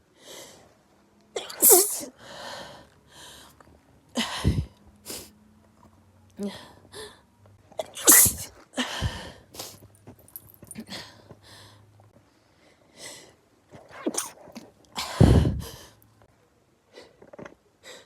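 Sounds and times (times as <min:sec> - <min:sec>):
person sneezing: 0:01.4 - 0:02.1, 0:07.9 - 0:08.5.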